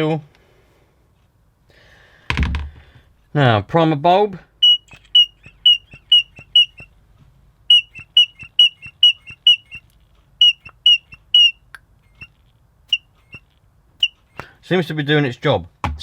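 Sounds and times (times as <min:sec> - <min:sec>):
primer bulb squeaking: 0:04.6 - 0:07.0, 0:07.7 - 0:14.4.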